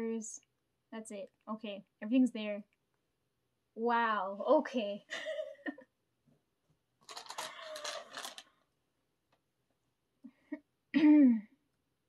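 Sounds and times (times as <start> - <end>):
paper packaging rustling: 7.0 - 8.6.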